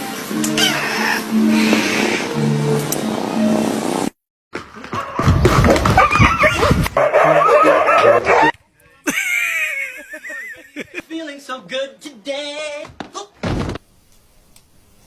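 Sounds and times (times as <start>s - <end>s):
dog whining and yipping: 6.0s - 8.5s.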